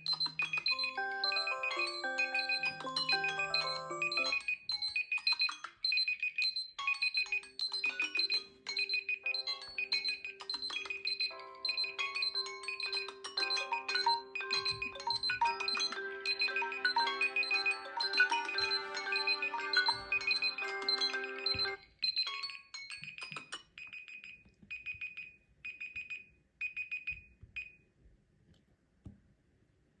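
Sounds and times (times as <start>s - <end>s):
chime-like ringtone notes: 0.0s - 5.7s, 6.7s - 24.3s
high alarm beeps: 0.0s - 22.6s.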